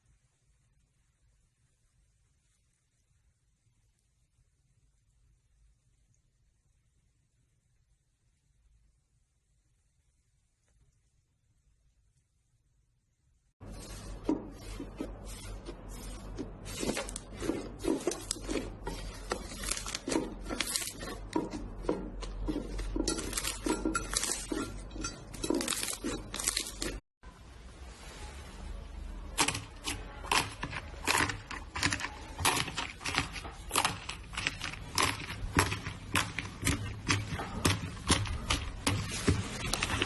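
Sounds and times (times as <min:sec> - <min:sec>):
slime squelching: 0:13.6 - 0:27.0, 0:29.2 - 0:40.0.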